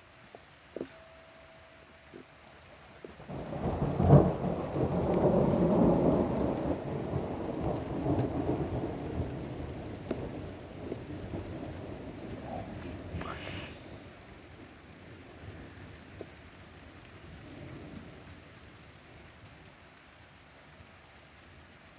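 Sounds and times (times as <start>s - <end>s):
steady rain: 0.0s - 21.9s
thunder crack and rumble: 3.2s - 14.4s.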